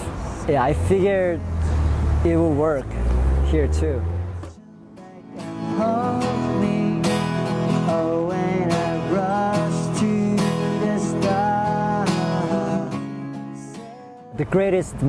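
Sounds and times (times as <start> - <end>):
acoustic guitar playing: 0.1 - 14.8.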